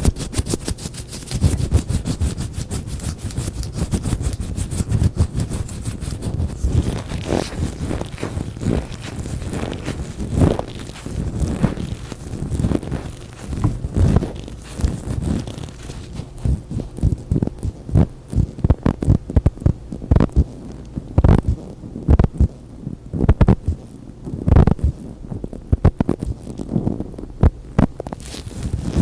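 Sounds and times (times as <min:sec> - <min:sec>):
latex gloves popping and rubbing: 0:00.0 - 0:22.6, 0:23.2 - 0:29.0.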